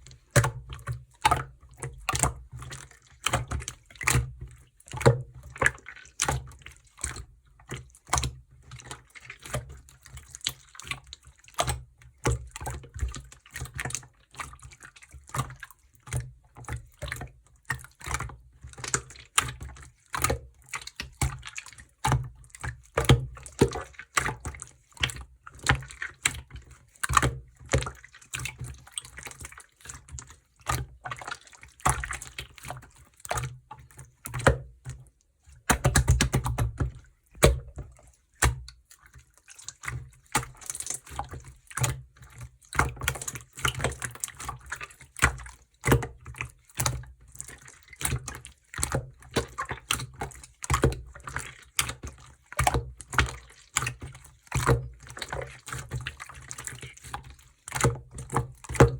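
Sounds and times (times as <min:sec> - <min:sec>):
slime squelching and clicking: 0:22.7 - 0:42.1.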